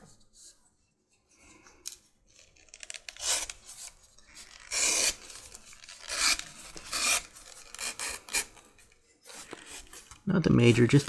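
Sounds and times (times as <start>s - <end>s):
leather strap scraping: 2.3s - 10.1s.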